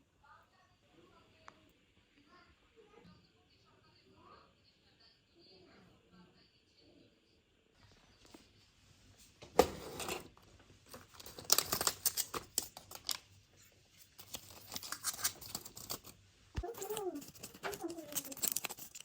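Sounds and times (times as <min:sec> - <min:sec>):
small objects clicking and scraping: 0:10.9 - 0:13.3, 0:14.0 - 0:19.0.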